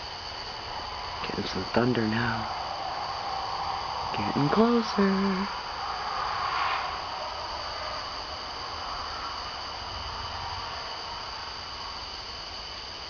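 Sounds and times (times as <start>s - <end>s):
night insects chirring: 0.0s - 13.0s.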